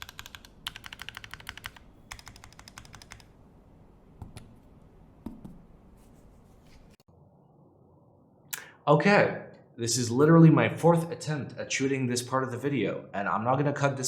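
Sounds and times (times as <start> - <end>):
mechanical keyboard typing: 0.0 - 3.3.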